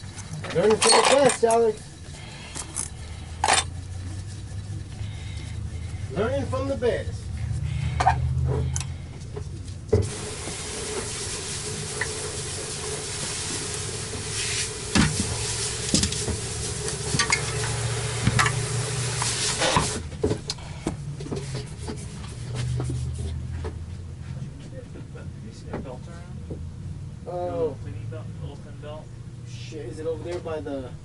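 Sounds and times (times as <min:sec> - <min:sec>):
steady hiss: 0:10.0 - 0:20.1.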